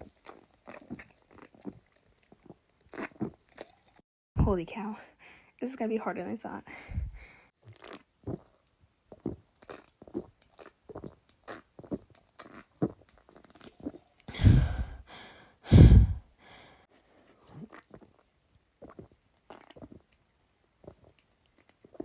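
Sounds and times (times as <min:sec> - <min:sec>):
person gulping soda: 0:00.0 - 0:04.0, 0:06.9 - 0:16.3, 0:17.3 - 0:22.0
deep mouth sounds: 0:06.9 - 0:15.1, 0:15.7 - 0:16.3, 0:17.4 - 0:18.2, 0:18.8 - 0:20.1.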